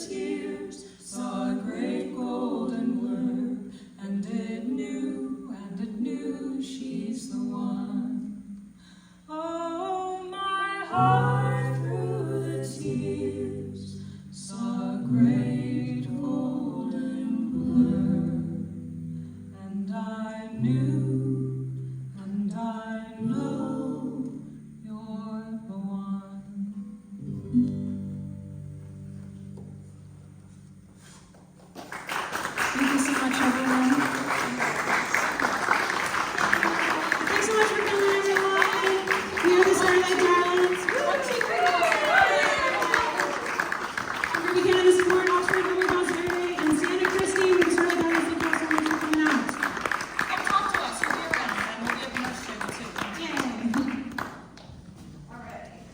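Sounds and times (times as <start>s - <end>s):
vocal group singing in harmony: 0.0s - 8.7s, 9.3s - 18.8s, 19.9s - 26.0s.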